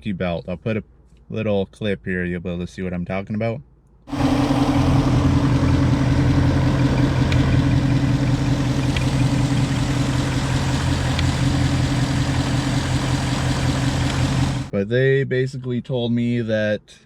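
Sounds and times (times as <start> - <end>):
car engine idling: 4.1 - 14.7.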